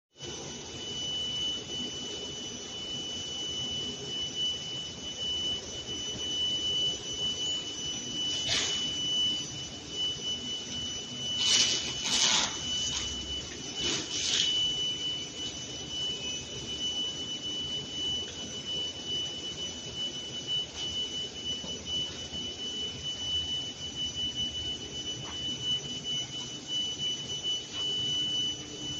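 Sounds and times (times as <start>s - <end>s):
machinery high-pitched whine: 0.2s - 28.9s.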